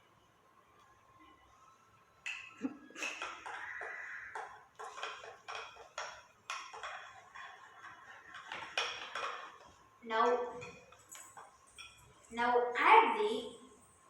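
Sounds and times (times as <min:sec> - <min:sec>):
spoon knocking and scraping container: 0:02.3 - 0:12.2.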